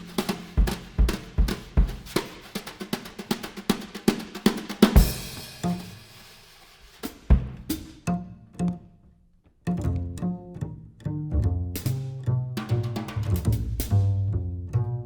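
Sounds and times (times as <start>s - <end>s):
drum kit playing: 0.0s - 8.2s, 11.8s - 14.3s.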